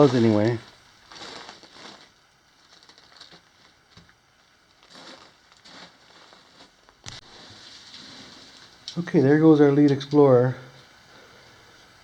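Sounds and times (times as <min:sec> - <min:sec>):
footsteps on gravel: 0:04.9 - 0:07.7.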